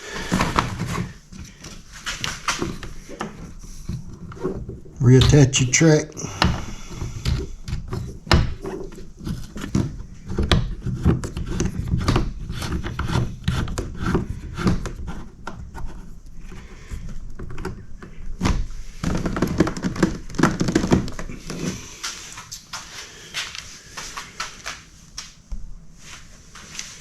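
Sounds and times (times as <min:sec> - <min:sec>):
plastic and metal hardware knocking: 0:00.2 - 0:05.6, 0:06.2 - 0:21.7.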